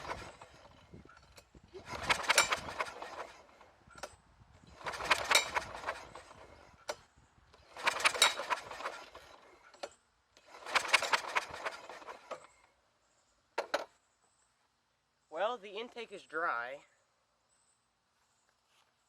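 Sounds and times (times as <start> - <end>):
lawn mower engine cranking: 0.0 - 12.7, 13.6 - 13.9.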